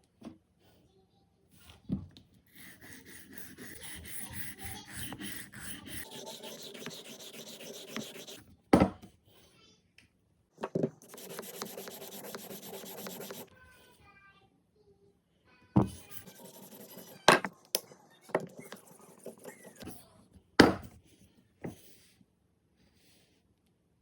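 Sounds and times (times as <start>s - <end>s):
knife sharpener grating on blade: 2.5s - 8.4s, 11.0s - 13.5s, 15.9s - 17.5s, 18.3s - 19.9s.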